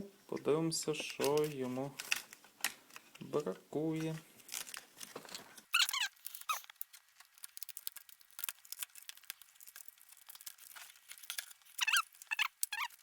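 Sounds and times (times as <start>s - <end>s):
plastic casing clicks and crackles: 1.0s - 3.3s, 4.5s - 13.0s
short high squeak: 5.8s - 6.6s.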